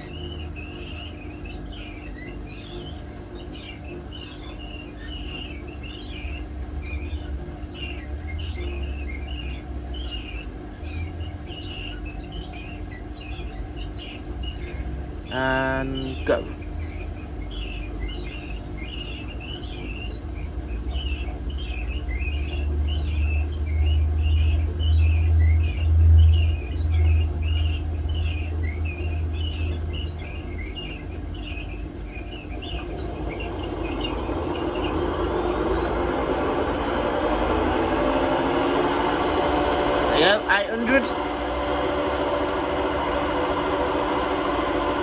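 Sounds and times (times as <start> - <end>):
regular high squeaking: 0.0 - 45.0
motor whine: 32.3 - 45.0.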